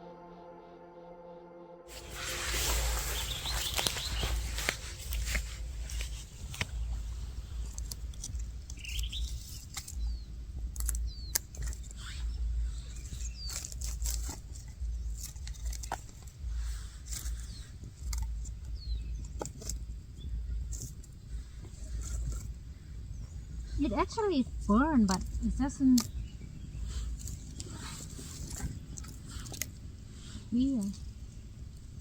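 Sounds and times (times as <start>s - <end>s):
high falling chirps: 1.9s - 6.0s
wind buffeting microphone: 2.2s - 32.0s.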